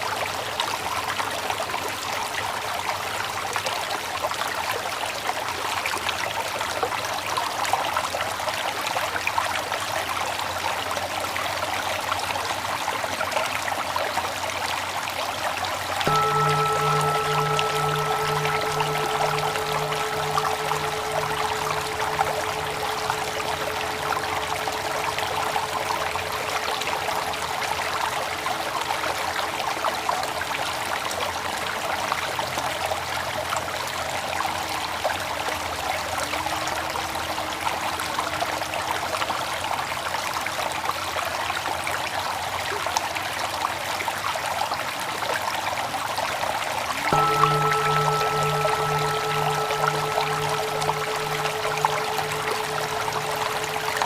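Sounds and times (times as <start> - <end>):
faint low wavering tone: 16.0 - 30.7, 47.1 - 54.0
water flowing: 16.0 - 30.7, 47.2 - 54.0
meditation bell humming: 16.0 - 31.1, 47.1 - 54.0.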